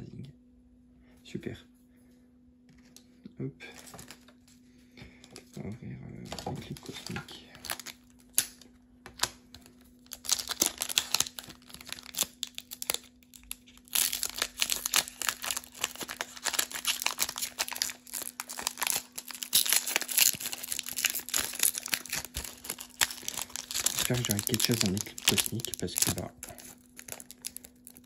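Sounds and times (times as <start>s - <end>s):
foil wrapper tearing and crinkling: 6.3s - 28.0s.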